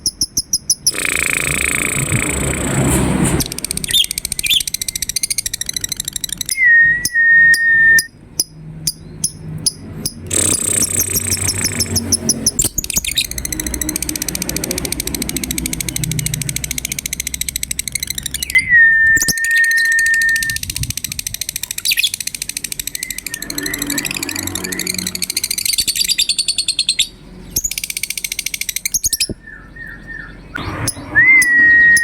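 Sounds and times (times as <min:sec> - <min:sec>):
bird chattering trill: 0:00.0 - 0:02.8, 0:03.4 - 0:32.0
sharp clicks: 0:00.7 - 0:06.6, 0:08.9 - 0:18.6
whistle-like note: 0:18.6 - 0:20.6, 0:30.9 - 0:32.0.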